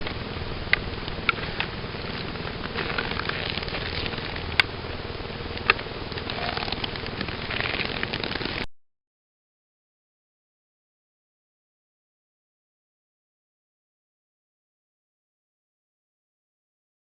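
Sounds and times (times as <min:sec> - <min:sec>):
rain-like patter: 0:00.0 - 0:08.7
sharp ticks: 0:05.5 - 0:08.7.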